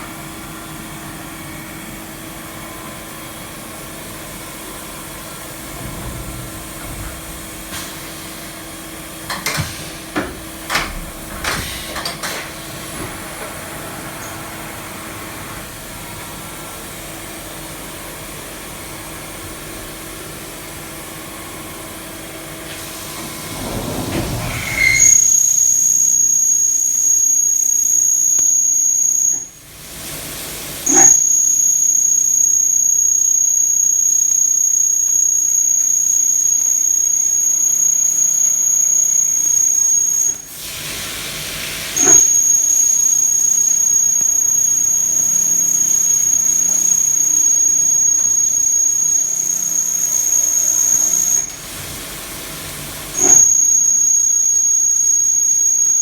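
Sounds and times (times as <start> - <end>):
milling machine high whine: 0.0 - 40.6, 41.3 - 56.0
machine jolt: 5.7 - 7.8, 23.2 - 25.2.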